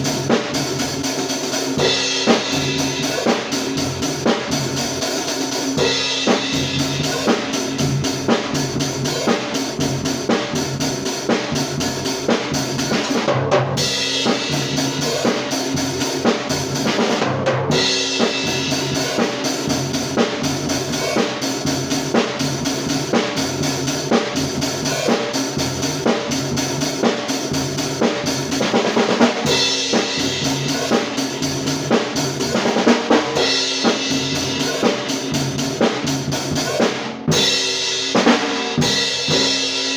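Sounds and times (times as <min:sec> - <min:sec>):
kick and snare beat: 0:00.0 - 0:39.9
cymbals: 0:13.8 - 0:39.9.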